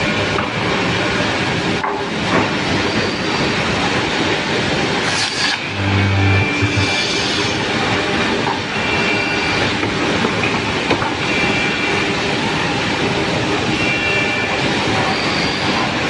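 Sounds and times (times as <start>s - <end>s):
boring machine running: 5.0s - 9.2s
high machine whine: 5.0s - 9.8s.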